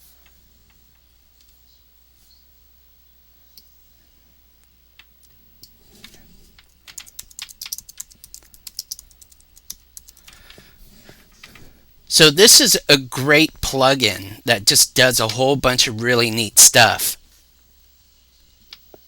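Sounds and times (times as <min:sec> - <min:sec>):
typing on computer keyboard: 0:06.6 - 0:10.5.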